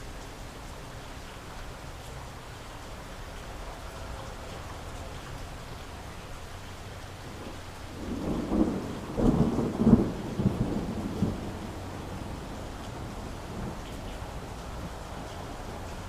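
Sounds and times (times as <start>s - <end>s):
steady rain: 0.0s - 16.0s
rolling thunder: 7.2s - 16.0s.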